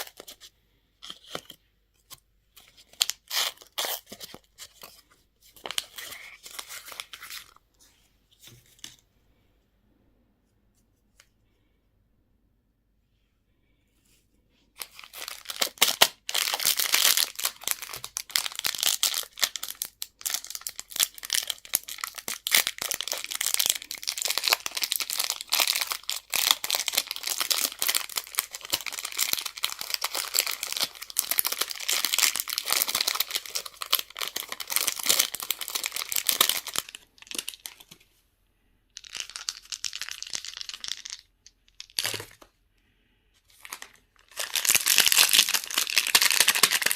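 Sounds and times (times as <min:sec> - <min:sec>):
candy wrapper crinkling: 0:00.0 - 0:01.6, 0:02.6 - 0:05.0, 0:05.6 - 0:07.6, 0:14.8 - 0:38.0, 0:39.0 - 0:42.5, 0:43.5 - 0:46.9.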